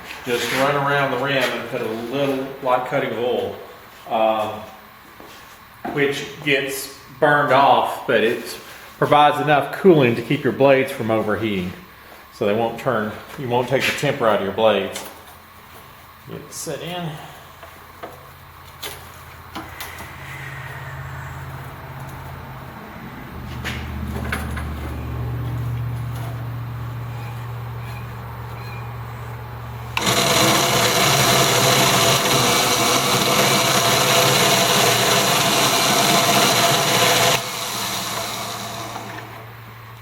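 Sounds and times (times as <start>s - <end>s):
low motor hum: 19.2s - 40.0s
loud grinding noise: 19.6s - 22.7s, 29.9s - 39.7s.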